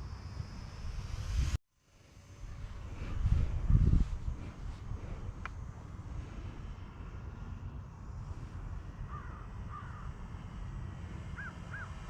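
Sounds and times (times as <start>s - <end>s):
wind rumble on microphone: 0.0s - 1.6s, 2.2s - 12.0s
bird calling: 9.1s - 10.1s, 11.3s - 12.0s.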